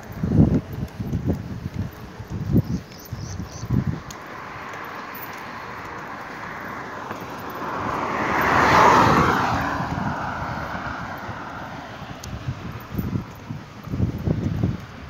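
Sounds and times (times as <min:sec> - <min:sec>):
vehicle passing by: 0:03.6 - 0:14.4.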